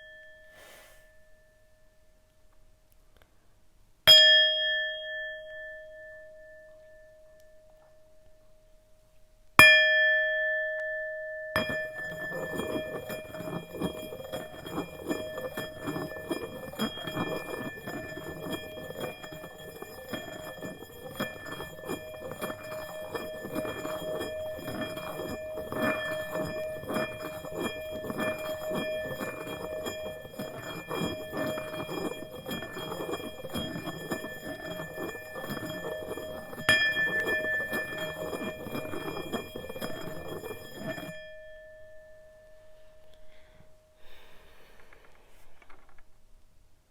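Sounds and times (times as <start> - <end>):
singing bowl ringing: 0.0 - 2.3, 4.1 - 8.8, 9.6 - 44.1
mallet rubbing bowl rim: 11.6 - 42.0.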